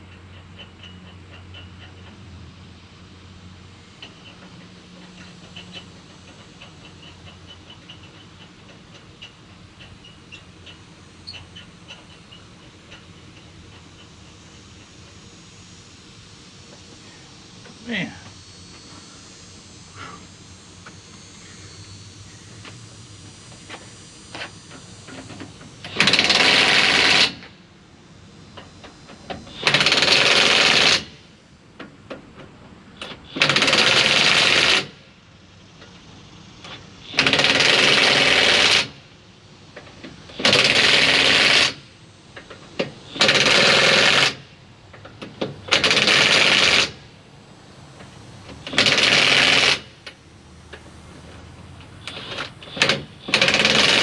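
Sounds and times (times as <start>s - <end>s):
impact wrench hammering: 48.6s - 49.9s, 52.0s - 54.0s.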